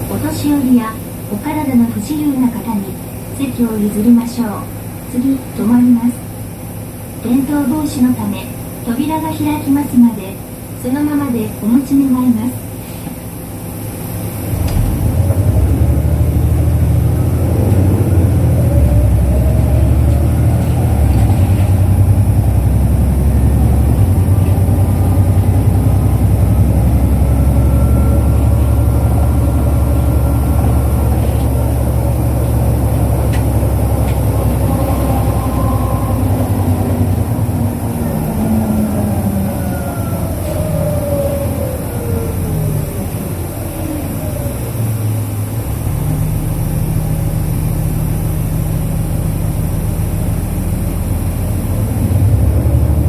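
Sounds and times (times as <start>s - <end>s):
bus diesel engine droning: 0.0s - 53.0s
engine whine falling in pitch: 14.5s - 53.0s.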